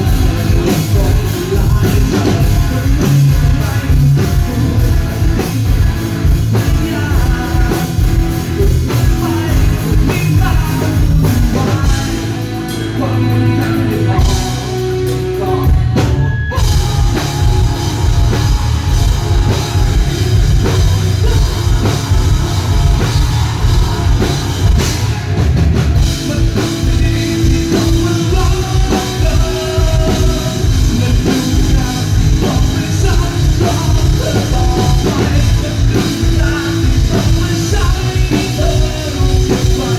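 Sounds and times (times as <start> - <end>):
rock song over sound system: 0.0 - 39.9.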